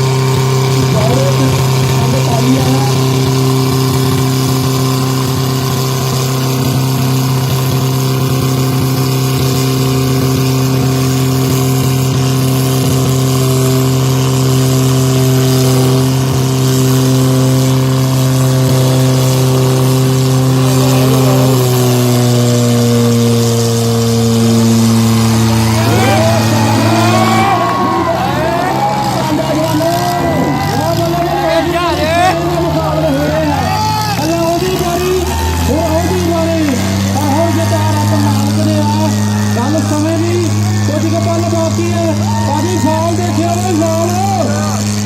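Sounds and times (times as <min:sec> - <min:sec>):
tractor diesel engine revving: 0:00.0 - 0:45.0.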